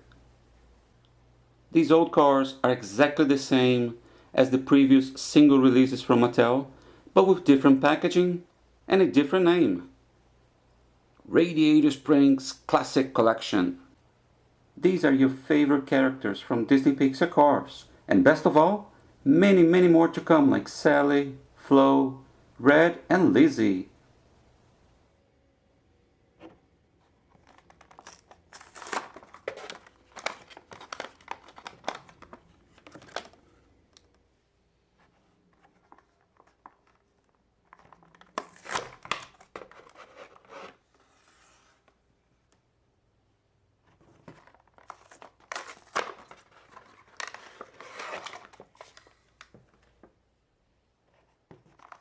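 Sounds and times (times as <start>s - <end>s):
packaging crinkling and tearing: 27.4s - 33.4s, 35.7s - 40.8s, 44.4s - 49.5s.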